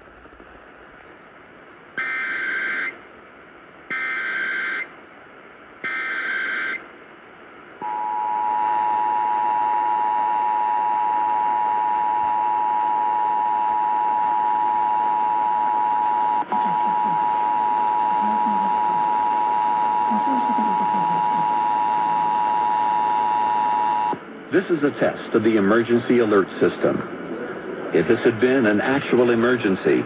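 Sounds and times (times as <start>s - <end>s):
steady two-tone attention signal: 16.3s - 26.4s.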